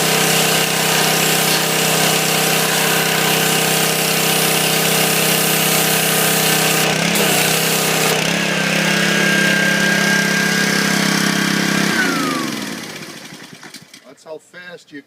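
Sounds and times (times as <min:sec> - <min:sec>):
sandblaster spray hissing on metal: 0:00.0 - 0:08.2
pressure washer engine running: 0:00.0 - 0:13.9.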